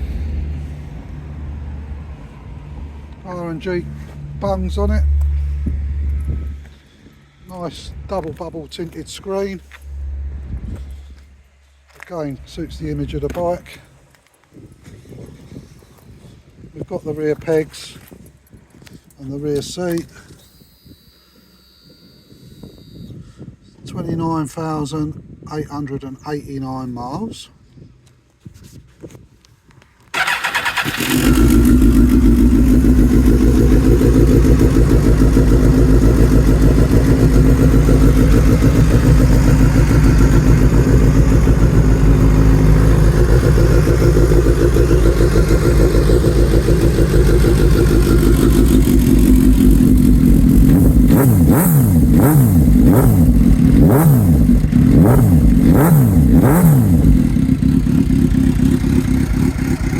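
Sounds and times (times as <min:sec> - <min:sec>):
motorcycle engine revving: 0:07.5 - 0:13.7, 0:30.2 - 0:59.9
motorcycle engine starting: 0:07.5 - 0:13.8, 0:30.1 - 0:59.9
motorcycle engine idling: 0:30.2 - 0:59.9.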